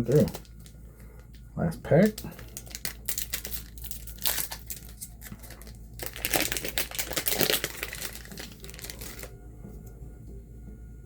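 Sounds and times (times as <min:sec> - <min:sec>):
foil wrapper crinkling and tearing: 0:00.0 - 0:00.7, 0:01.9 - 0:09.3.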